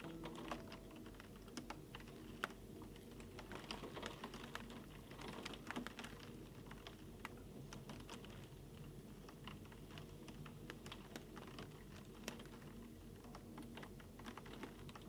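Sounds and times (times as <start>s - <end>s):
low steady hum: 0.0s - 2.4s.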